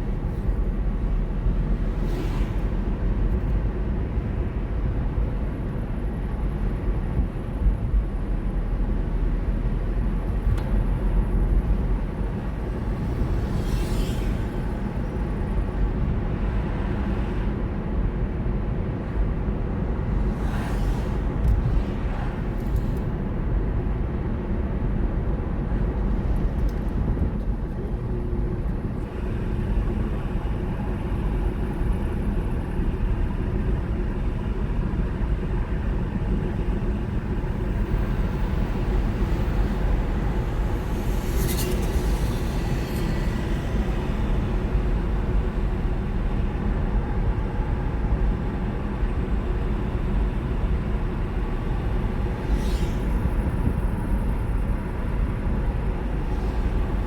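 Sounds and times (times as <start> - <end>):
car interior road rumble: 0.0 - 13.7.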